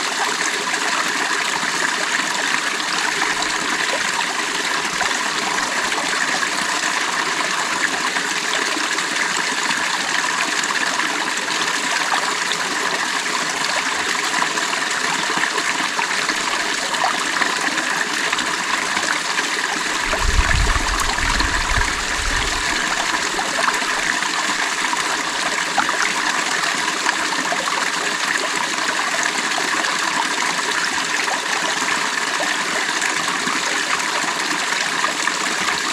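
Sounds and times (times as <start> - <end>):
creek water over stones: 0.0 - 35.9
low rumble: 20.0 - 24.0.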